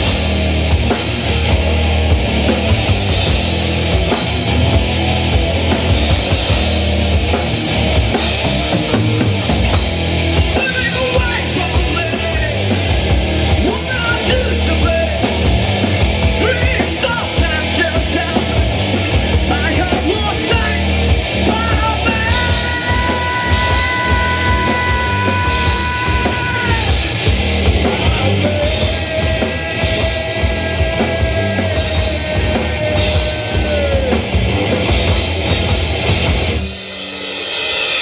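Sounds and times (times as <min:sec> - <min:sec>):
distorted guitar and bass: 0:00.0 - 0:38.0
fast driving drums: 0:00.0 - 0:38.0
live rock band playing: 0:00.0 - 0:38.0.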